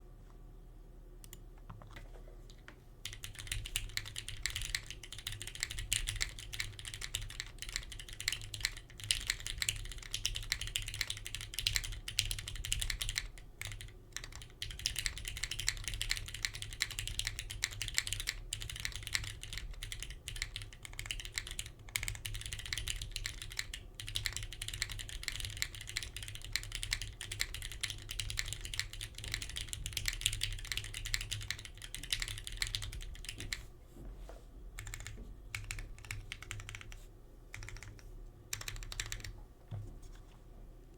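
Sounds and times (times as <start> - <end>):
faint low hum: 0.0 - 40.9
mechanical keyboard typing: 3.0 - 33.6, 34.8 - 39.4.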